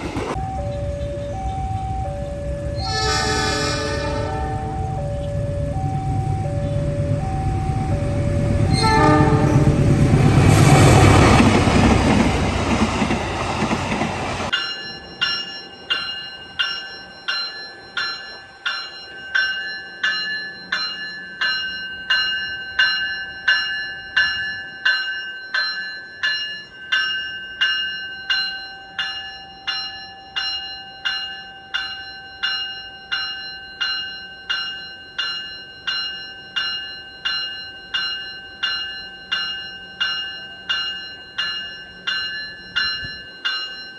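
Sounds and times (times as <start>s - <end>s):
train running noise: 0.0s - 26.0s
locomotive bell ringing: 0.0s - 43.9s.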